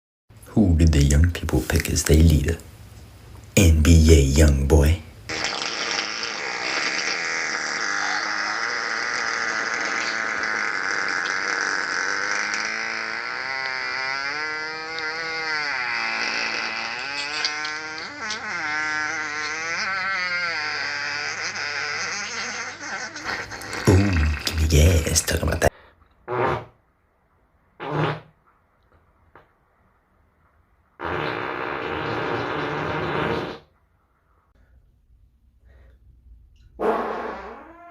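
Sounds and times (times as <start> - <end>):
buzzing fart: 5.3 - 26.9, 27.8 - 28.5, 31.0 - 33.8, 36.6 - 37.9.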